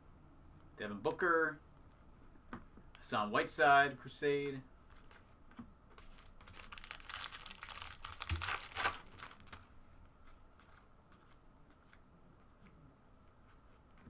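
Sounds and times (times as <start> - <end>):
wrapper tearing and crinkling: 6.2 - 9.7.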